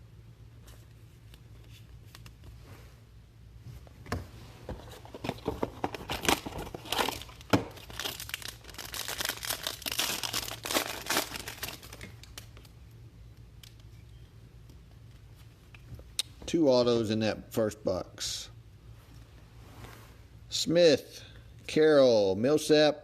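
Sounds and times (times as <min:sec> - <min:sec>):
wrapper being torn and crinkled: 0:05.9 - 0:12.7.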